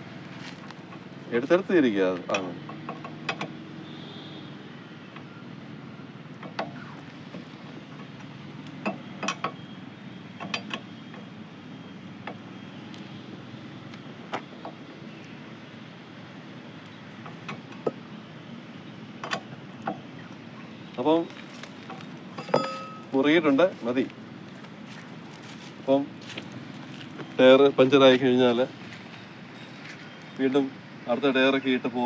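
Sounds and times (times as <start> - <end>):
metallic clicks of wheel spanner: 2.3 - 3.6, 6.4 - 9.6, 10.4 - 11.3, 19.2 - 20.0.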